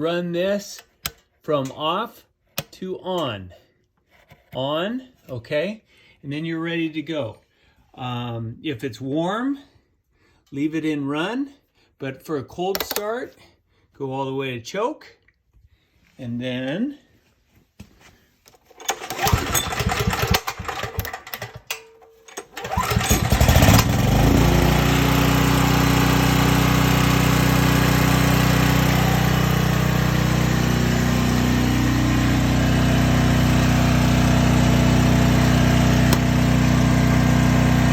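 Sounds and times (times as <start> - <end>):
pull-cord and handling noise: 18.4 - 24.0
generator engine running: 18.8 - 21.6, 22.3 - 37.9.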